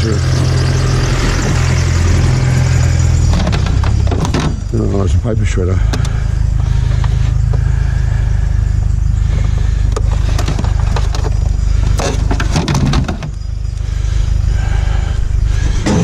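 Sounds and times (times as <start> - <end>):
car interior rumble: 0.0 - 16.0
clicks and rattles: 3.2 - 4.8, 9.4 - 13.8.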